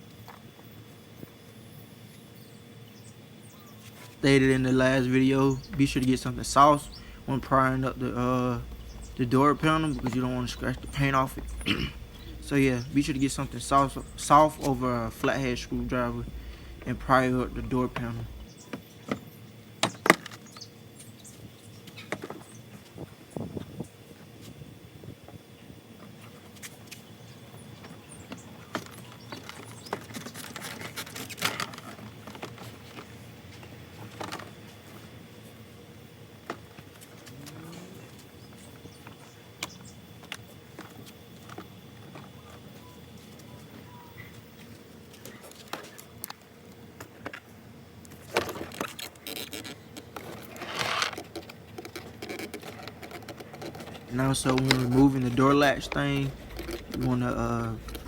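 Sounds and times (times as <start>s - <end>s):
rustling scrape: 48.5s - 58.0s.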